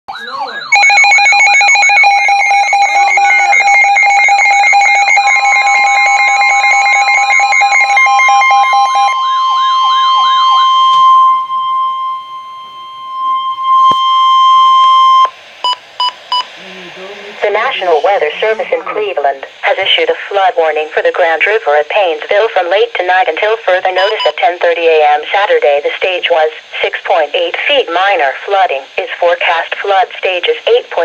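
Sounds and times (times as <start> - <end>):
steady weather alarm tone: 0.0 - 16.6, 17.4 - 24.5
wailing electronic siren: 0.1 - 15.3
pulsing beep tones: 0.1 - 16.5, 24.0 - 24.4
short beeps: 0.1 - 16.5, 24.0 - 24.4.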